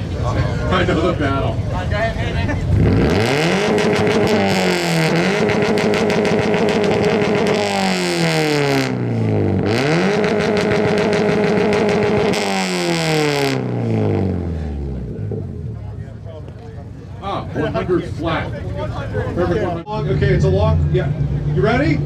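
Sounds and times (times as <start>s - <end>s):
car engine revving hard: 2.6s - 15.7s.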